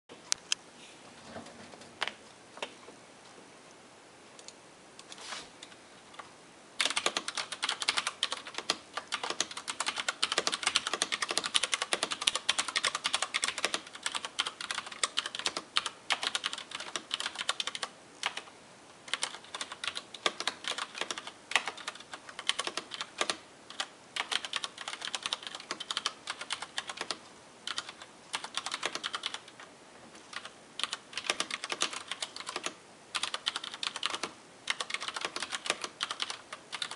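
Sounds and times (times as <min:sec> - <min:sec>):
mechanical keyboard typing: 0:06.8 - 0:18.5, 0:19.1 - 0:29.7, 0:30.3 - 0:36.9.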